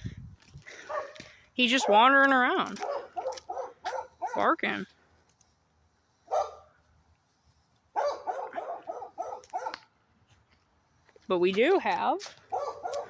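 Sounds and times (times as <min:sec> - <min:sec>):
dog barking: 0:00.9 - 0:01.2, 0:02.8 - 0:04.5, 0:06.3 - 0:06.7, 0:07.9 - 0:09.9, 0:12.5 - 0:13.0.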